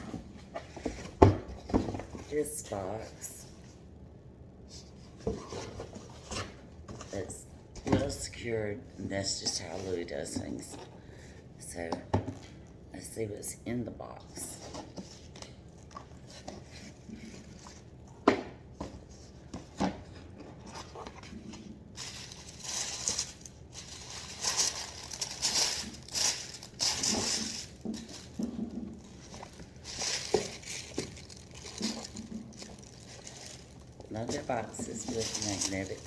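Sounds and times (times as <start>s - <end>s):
paper rustling and crinkling: 18.8s - 36.0s.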